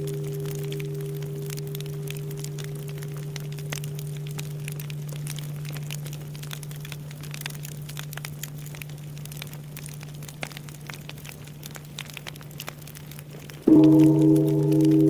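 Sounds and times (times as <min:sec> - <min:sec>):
temple bell humming: 0:00.0 - 0:05.9, 0:13.7 - 0:15.0
wood fire crackling: 0:00.0 - 0:15.0.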